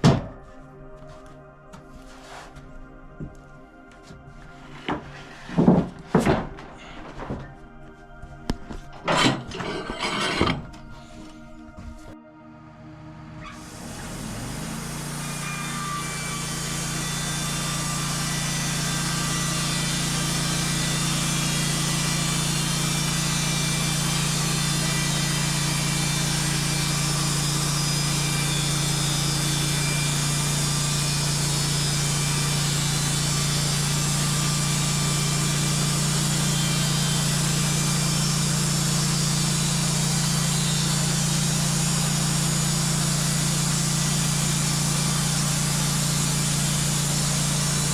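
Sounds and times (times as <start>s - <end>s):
sawmill engine humming: 12.9s - 47.9s.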